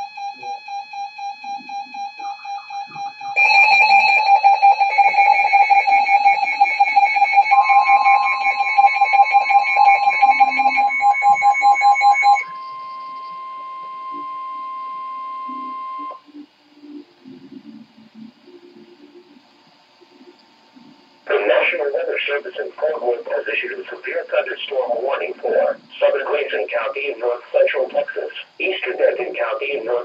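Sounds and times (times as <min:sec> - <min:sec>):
pulsing guitar-like music loop: 0:01.6 - 0:17.5
steady electronic alert tone: 0:02.0 - 0:16.2.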